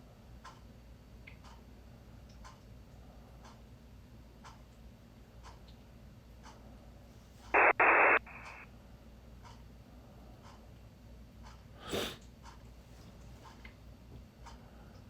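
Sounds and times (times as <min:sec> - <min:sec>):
burst of static hiss: 0:07.6 - 0:08.6
faint ticking: 0:07.6 - 0:08.6.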